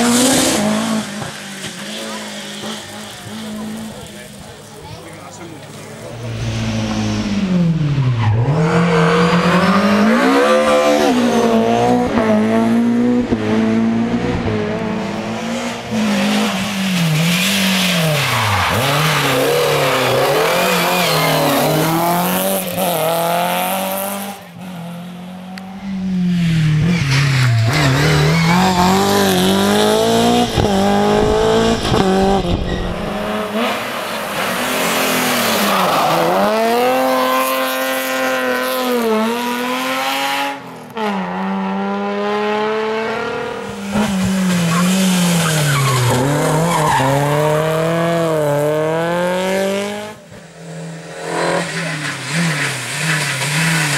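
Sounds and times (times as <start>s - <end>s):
rally car engines revving: 0.0s - 53.9s.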